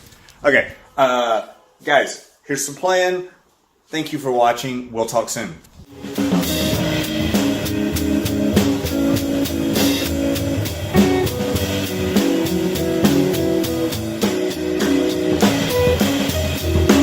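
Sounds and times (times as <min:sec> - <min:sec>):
drum kit playing a beat: 0:05.9 - 0:17.0
guitar: 0:05.9 - 0:17.0.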